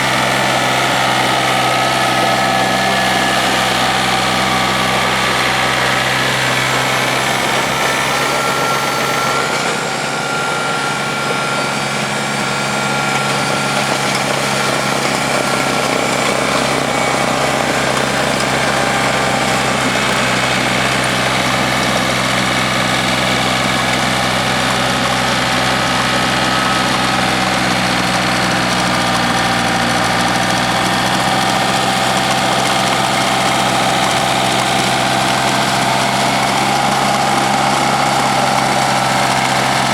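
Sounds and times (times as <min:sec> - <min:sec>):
snowblower running: 0:00.0 - 0:39.9
tractor engine running: 0:00.0 - 0:39.9.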